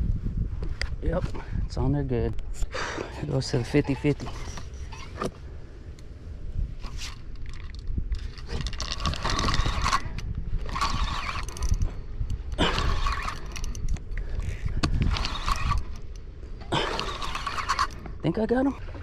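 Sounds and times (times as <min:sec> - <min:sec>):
low wind rumble: 0:00.0 - 0:19.0
fishing reel gears whirring: 0:06.8 - 0:18.1.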